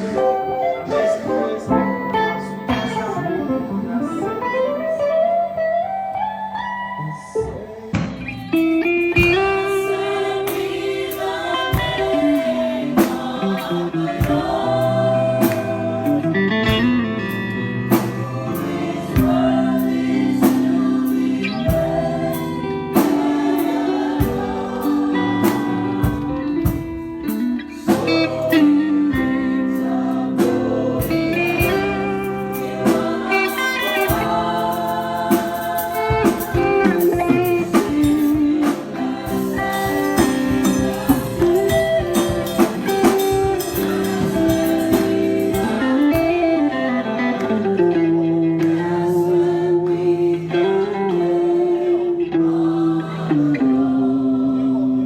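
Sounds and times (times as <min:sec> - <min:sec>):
person singing: 0:00.0 - 0:04.8, 0:17.9 - 0:55.0
guitar: 0:00.0 - 0:55.0
drums: 0:07.9 - 0:46.9.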